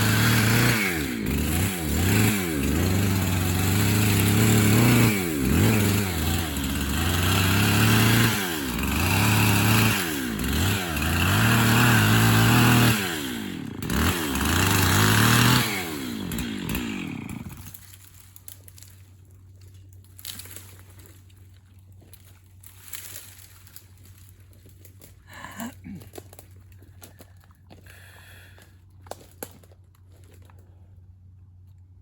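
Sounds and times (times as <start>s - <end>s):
chainsaw cutting: 0.0s - 19.0s, 22.8s - 29.3s.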